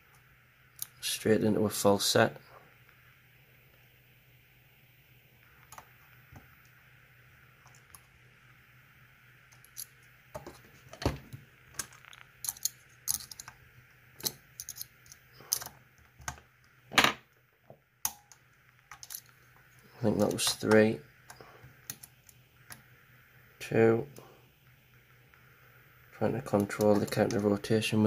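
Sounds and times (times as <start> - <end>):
lock pick clicks and scrapes: 11.8 - 13.5, 14.2 - 15.8, 18.9 - 19.3.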